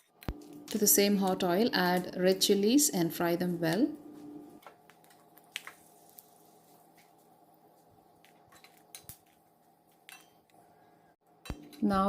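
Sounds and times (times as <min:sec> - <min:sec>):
chilies frying in oil: 0:05.0 - 0:10.1.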